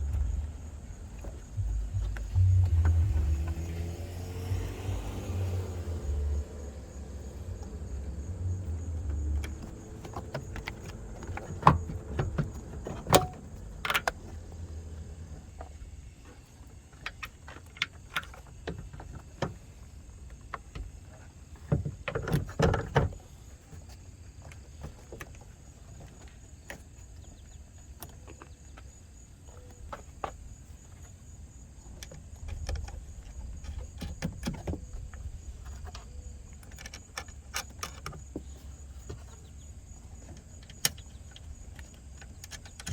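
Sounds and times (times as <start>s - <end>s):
low rumble: 0.0s - 9.6s.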